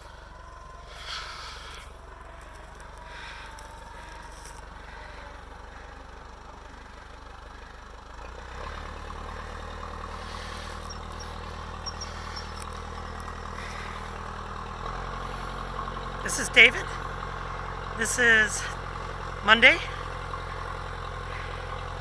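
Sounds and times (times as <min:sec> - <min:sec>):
tractor engine running: 0:00.0 - 0:22.0.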